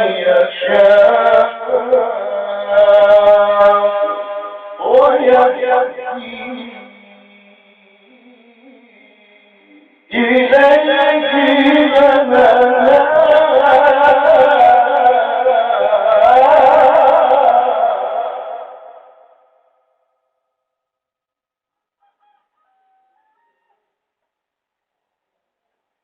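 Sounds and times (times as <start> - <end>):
man chanting melodically: 0.0 - 18.8.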